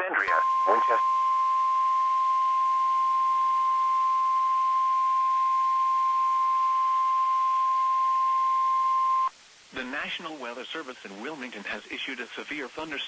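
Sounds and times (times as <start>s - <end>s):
faint radio hiss: 0.0s - 13.0s
steady alarm beep: 0.4s - 9.3s.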